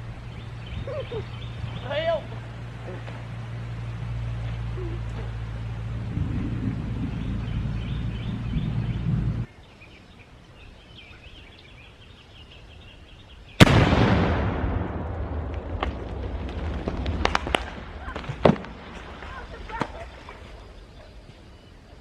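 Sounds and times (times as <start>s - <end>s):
steady low hum: 0.0s - 22.0s
explosion blast: 13.6s - 18.9s
sharp cracks: 13.6s - 20.0s.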